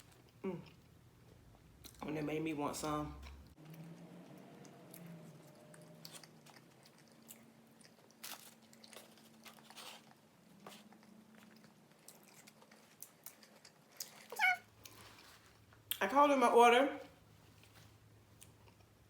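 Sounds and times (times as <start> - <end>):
person chewing food: 0.0 - 2.0, 3.2 - 16.0, 17.5 - 19.0
food crunching: 3.2 - 16.0.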